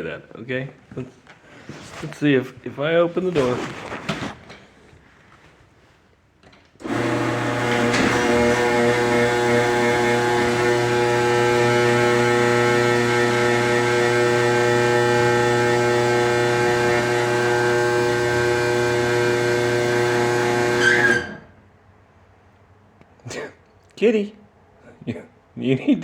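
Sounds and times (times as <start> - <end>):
garage door opener motor humming: 6.8 - 21.6.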